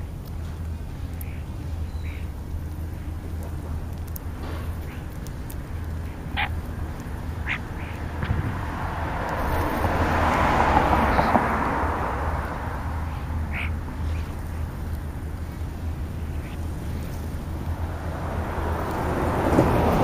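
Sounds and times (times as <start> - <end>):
steady low hum: 0.0 - 20.0
harsh bird calls: 1.1 - 3.2, 4.6 - 8.3, 12.6 - 17.3
whooshing rush: 7.4 - 14.6.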